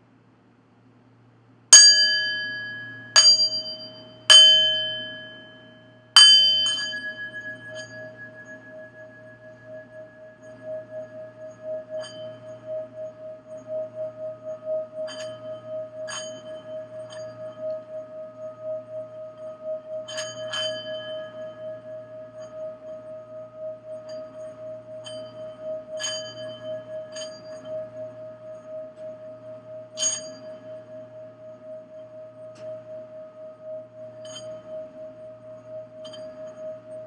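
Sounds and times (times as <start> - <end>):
high-pitched ringing strikes: 1.7 - 17.7
singing bowl steady tone: 1.7 - 37.0.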